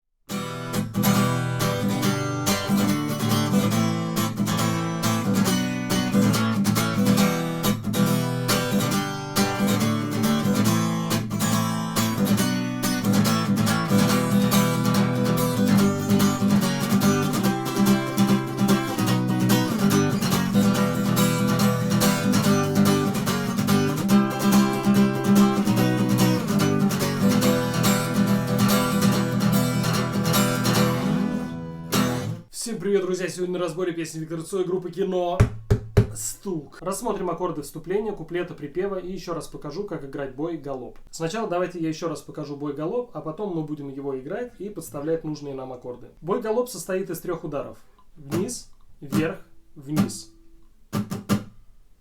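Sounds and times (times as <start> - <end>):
acoustic guitar strumming: 0.3 - 32.5, 49.1 - 51.7.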